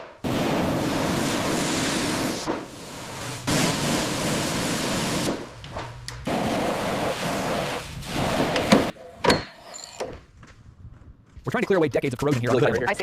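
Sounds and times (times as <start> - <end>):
high-pressure blast nozzle hissing: 0.2 - 5.5, 6.3 - 8.9.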